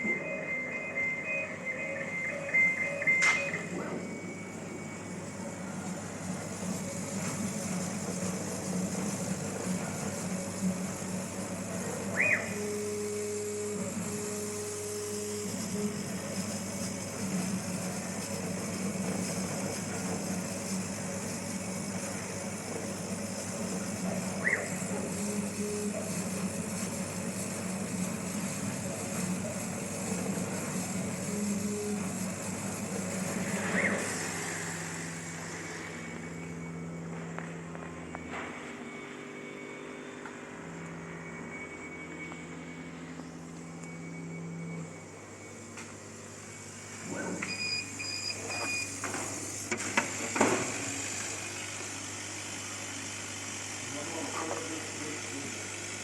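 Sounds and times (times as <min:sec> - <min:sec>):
laser cutting machine humming: 0:00.0 - 0:56.0
short rising squeak: 0:33.3 - 0:37.0.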